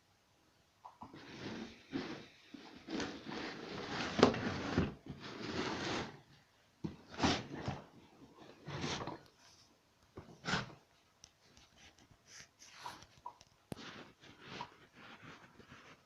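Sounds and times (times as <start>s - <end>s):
objects rubbing and knocking: 0.9s - 16.0s.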